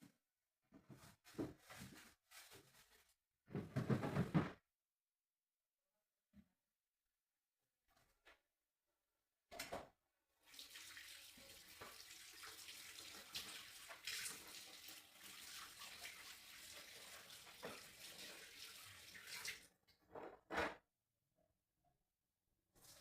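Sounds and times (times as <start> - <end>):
water running from a tap: 10.4 - 19.7, 22.8 - 23.0.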